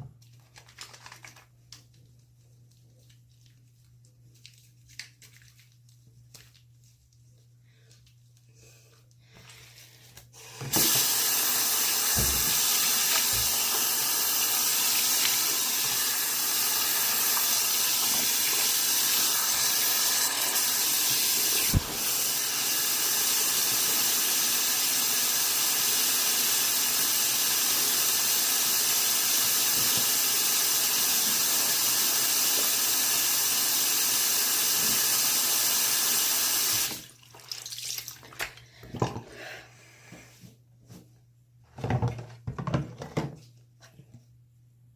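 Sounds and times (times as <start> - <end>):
tap water running: 10.4 - 38.6.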